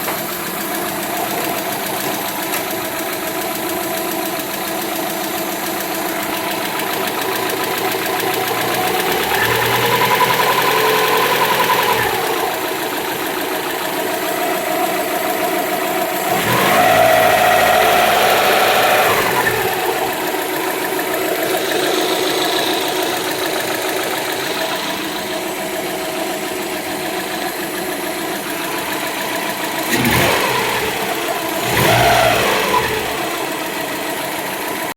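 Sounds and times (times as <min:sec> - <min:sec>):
car engine idling with ticking: 0:00.0 - 0:34.9.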